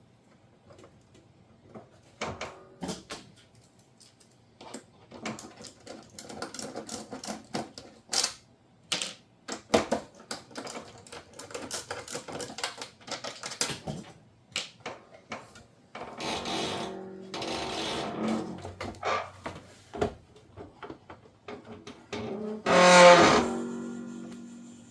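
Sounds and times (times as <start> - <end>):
clicks and knocks of plastic parts: 0.6 - 16.2.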